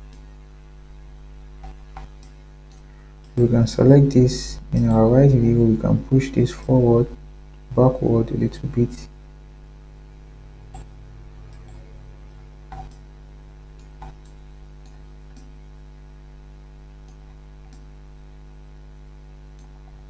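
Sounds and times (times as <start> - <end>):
low electrical hum: 0.0 - 20.0
computer mouse clicks: 1.6 - 3.4, 10.7 - 10.9, 11.5 - 11.9, 12.7 - 13.1, 13.8 - 15.5, 17.0 - 17.9.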